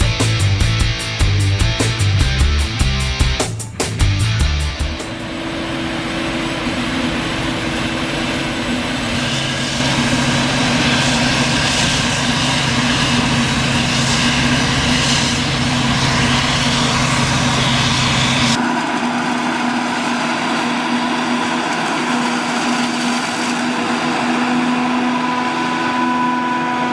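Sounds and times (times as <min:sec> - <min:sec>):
deep engine hum: 0:00.0 - 0:05.2
loud hiss: 0:00.0 - 0:05.2
heavy farm machinery engines running: 0:00.0 - 0:26.9.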